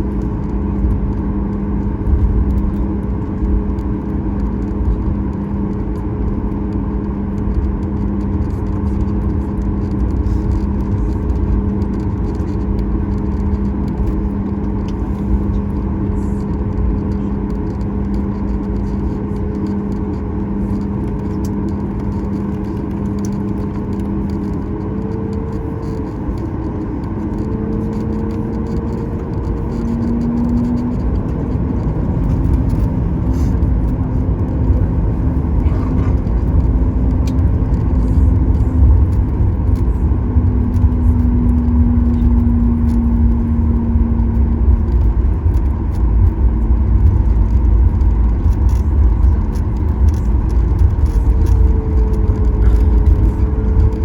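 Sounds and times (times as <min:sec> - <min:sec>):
jet engines humming: 0:00.0 - 0:41.2
low rumble: 0:00.0 - 0:54.0.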